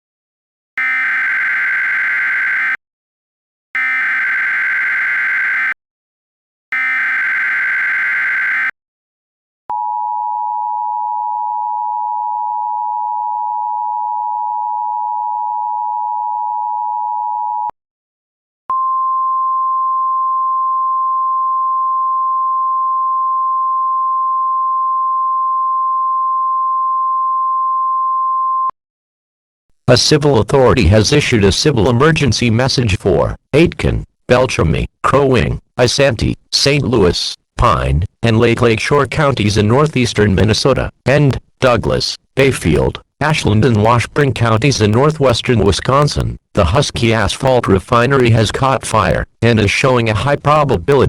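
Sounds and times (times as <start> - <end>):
screeching data tones: 0.8 - 2.8, 3.8 - 5.8, 6.7 - 8.8
steady warning tone: 0.8 - 2.8, 3.8 - 5.8, 6.7 - 8.7.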